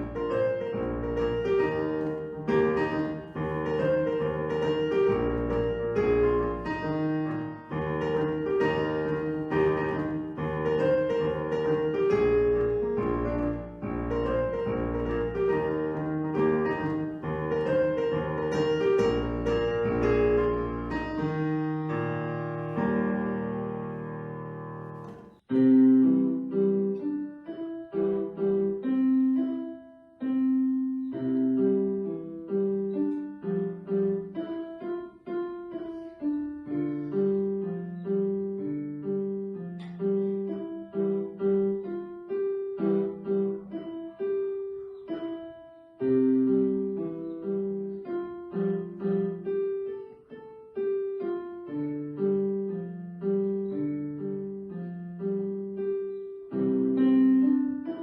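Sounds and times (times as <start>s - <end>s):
piano chord: 0.0s - 58.0s
piano melody: 0.0s - 58.0s.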